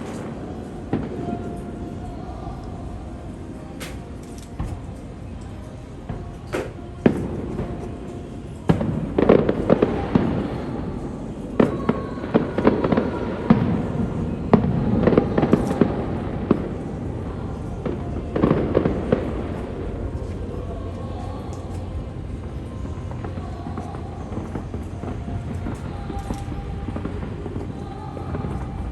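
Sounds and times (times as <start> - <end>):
fireworks crackling: 6.0 - 20.9.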